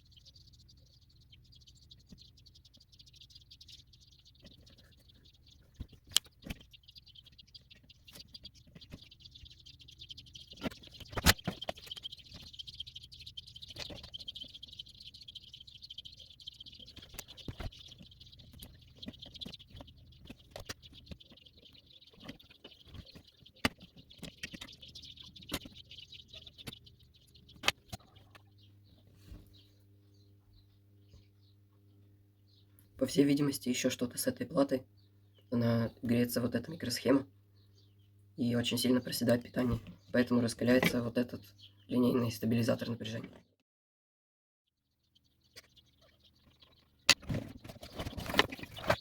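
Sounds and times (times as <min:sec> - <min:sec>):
crackles and clicks: 0:00.0 - 0:28.6.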